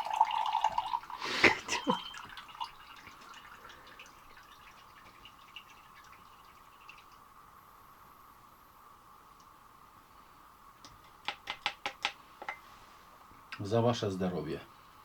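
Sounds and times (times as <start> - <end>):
water running: 0.0 - 7.5
low steady hum: 0.0 - 11.2
sharp knocks and clatter: 10.9 - 12.6.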